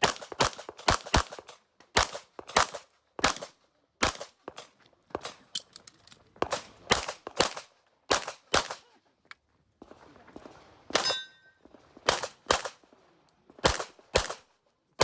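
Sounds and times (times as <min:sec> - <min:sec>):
pistol shots: 0:00.0 - 0:05.4, 0:06.4 - 0:08.8, 0:12.0 - 0:12.8, 0:13.6 - 0:14.5.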